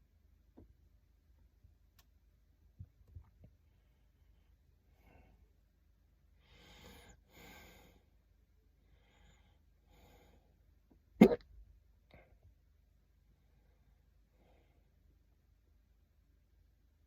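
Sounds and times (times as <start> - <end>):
person breathing softly: 3.5 - 10.8, 13.2 - 15.2.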